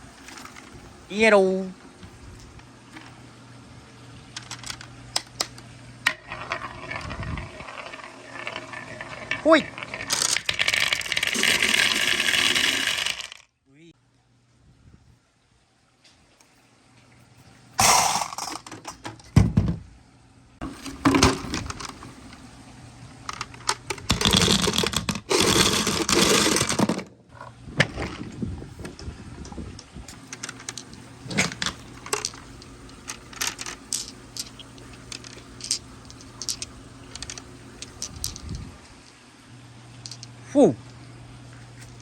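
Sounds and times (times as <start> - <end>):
marbles clattering down a track: 6.1 - 13.4, 23.3 - 27.0, 30.3 - 38.4.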